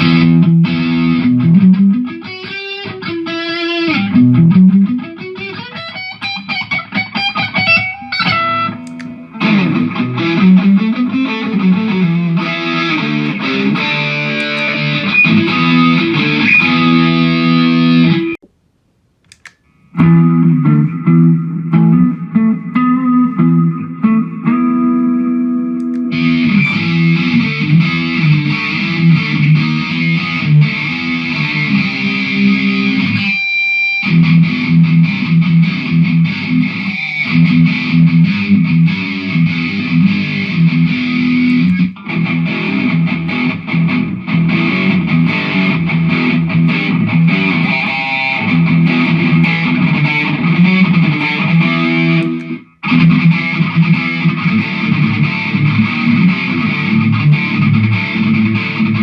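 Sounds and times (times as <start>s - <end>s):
electric guitar riffing: 0.0s - 18.4s, 19.7s - 59.0s.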